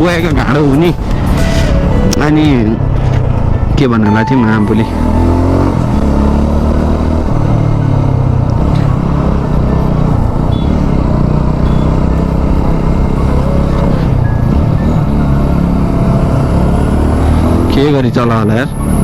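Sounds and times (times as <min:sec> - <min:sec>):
road and wind noise: 0:00.0 - 0:19.0
motorcycle engine running: 0:04.9 - 0:18.0.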